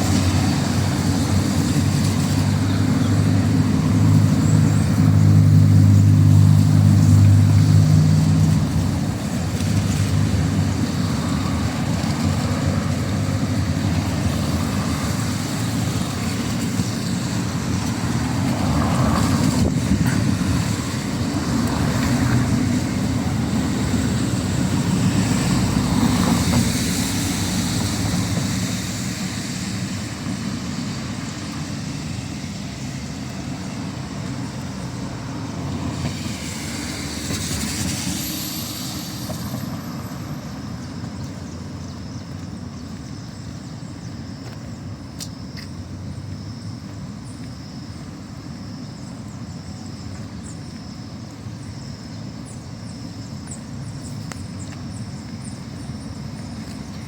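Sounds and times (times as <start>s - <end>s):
road traffic rumble: 0.0s - 57.0s.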